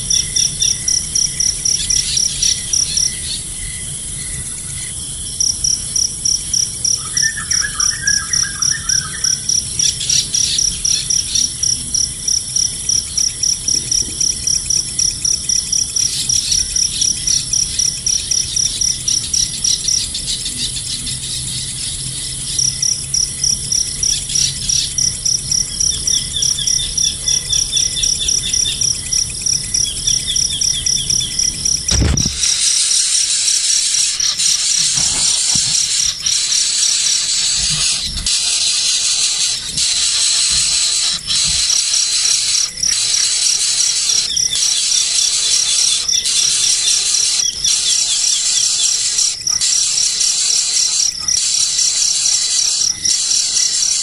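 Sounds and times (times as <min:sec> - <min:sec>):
insect chirping: 0:00.0 - 0:54.0
bird chirps: 0:07.0 - 0:11.1
steady hiss: 0:31.5 - 0:54.0
sudden knock: 0:31.9 - 0:32.4.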